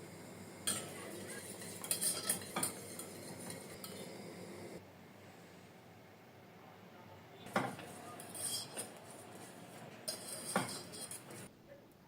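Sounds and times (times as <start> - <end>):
utensils knocking against dishes: 0.7 - 4.1, 7.5 - 11.5.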